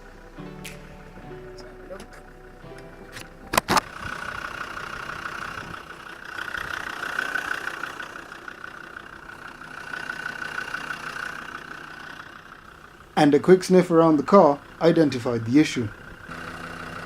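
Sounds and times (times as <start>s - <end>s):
constant high hum: 0.0s - 6.2s
car engine running: 0.0s - 17.0s.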